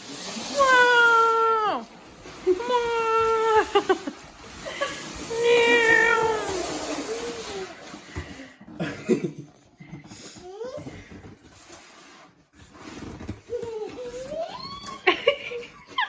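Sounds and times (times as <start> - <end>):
baby squealing and cooing: 0.4 - 4.0, 5.2 - 7.8, 13.5 - 15.1.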